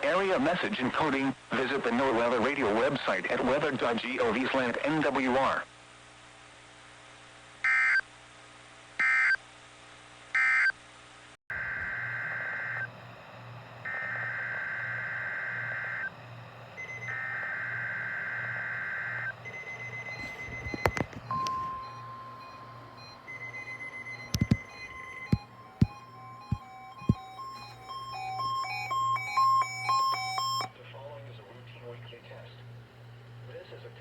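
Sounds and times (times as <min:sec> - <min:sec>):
sharp clicks: 0:24.2 - 0:27.8.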